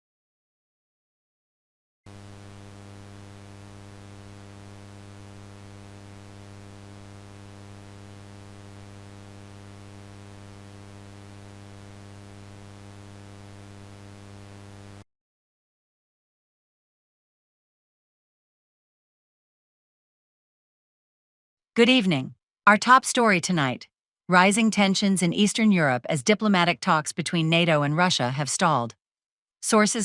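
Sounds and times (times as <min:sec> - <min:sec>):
mains hum: 0:02.1 - 0:15.0
static hiss: 0:02.1 - 0:15.0.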